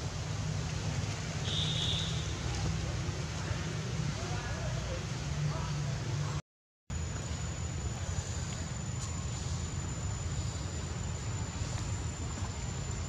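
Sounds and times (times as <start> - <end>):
low rumble and hiss: 0.0 - 13.0
high insect drone: 7.0 - 13.0.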